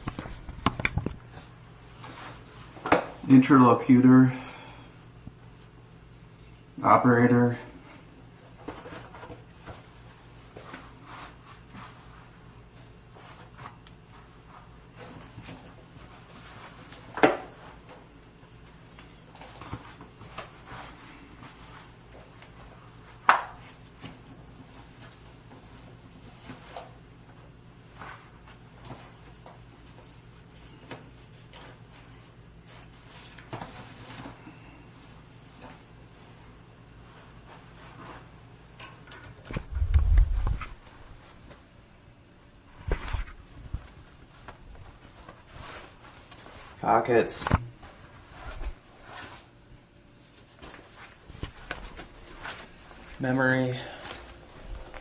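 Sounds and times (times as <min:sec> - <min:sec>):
steady low hum: 0:00.0 - 0:55.0
faint soft rustles: 0:07.8 - 0:38.7, 0:42.7 - 0:55.0.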